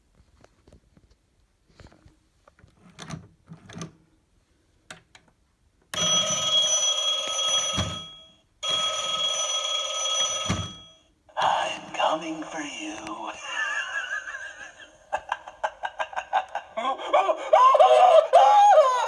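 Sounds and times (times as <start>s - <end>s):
recorded telephone bell ring: 6.0s - 11.2s.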